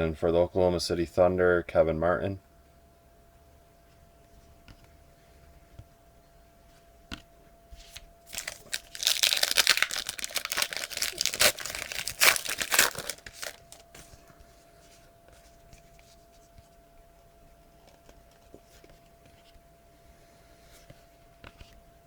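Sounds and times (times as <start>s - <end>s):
wrapper tearing and crinkling: 8.3s - 13.8s.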